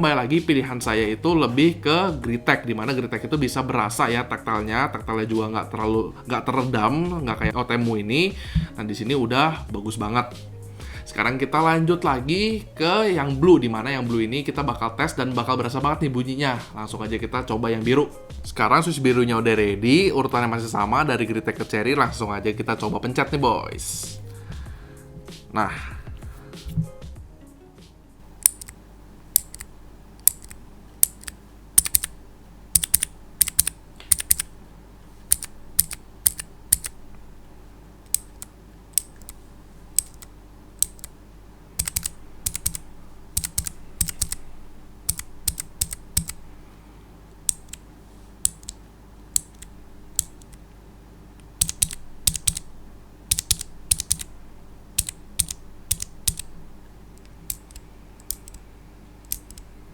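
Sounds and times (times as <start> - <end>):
mechanical keyboard key clicks: 28.4 - 32.2, 32.8 - 34.5, 35.3 - 37.0, 38.1 - 39.4, 40.0 - 41.1, 41.8 - 44.5, 45.1 - 46.4, 47.5 - 47.8, 48.5 - 48.8, 49.4 - 50.6, 51.6 - 52.7, 53.3 - 54.3, 55.0 - 56.6, 57.2 - 58.6, 59.2 - 59.6.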